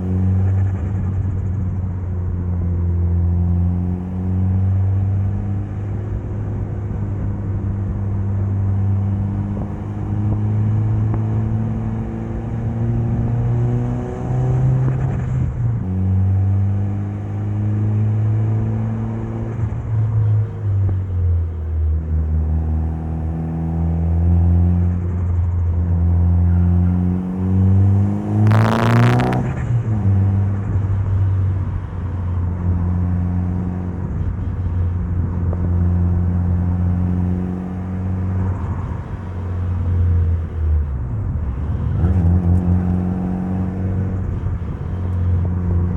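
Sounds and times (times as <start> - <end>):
car engine revving through gears: 8.7 - 19.8, 22.1 - 31.2, 41.6 - 45.9.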